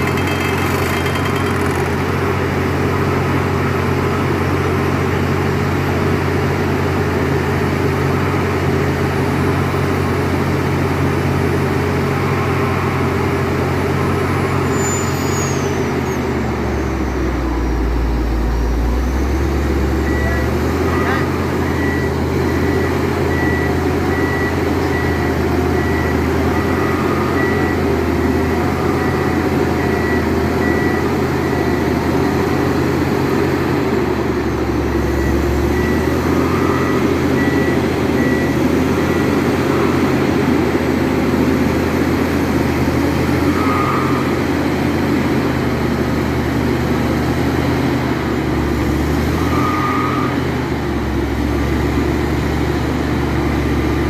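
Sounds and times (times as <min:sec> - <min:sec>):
rock drill hammering: 0:00.0 - 0:02.1
diesel engine and hydraulics droning: 0:00.0 - 0:54.0
warning beep: 0:19.8 - 0:32.5.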